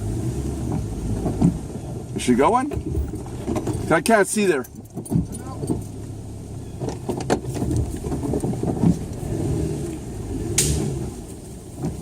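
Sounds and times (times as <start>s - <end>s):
truck engine running slowly: 0.0s - 12.0s.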